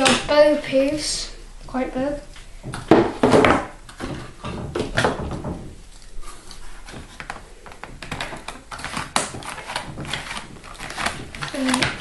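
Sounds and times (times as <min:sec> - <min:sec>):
packaging rustling: 0:05.9 - 0:12.0.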